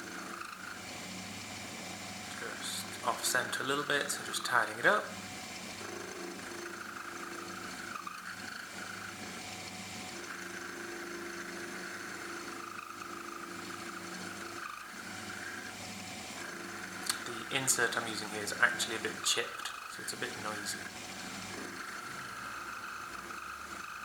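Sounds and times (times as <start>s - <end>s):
high whine of metal cutting: 0.0s - 24.0s
lathe motor hum: 0.0s - 24.0s.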